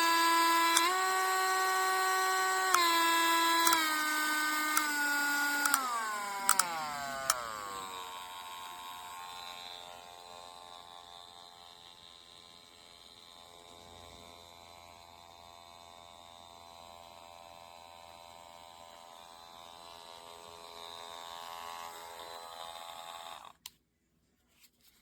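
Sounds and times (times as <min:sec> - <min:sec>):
rotary tool switch click: 0:00.0 - 0:09.7
rotary tool motor whine: 0:00.0 - 0:23.7.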